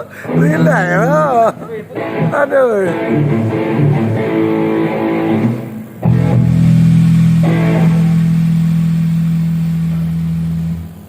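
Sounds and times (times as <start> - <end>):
electric guitar and bass notes: 0.0 - 11.0
loud low chord ringing: 3.0 - 10.9.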